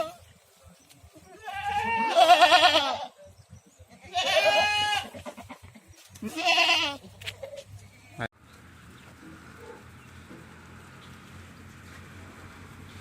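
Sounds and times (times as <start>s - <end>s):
goats bleating: 1.2s - 3.2s, 3.9s - 7.2s.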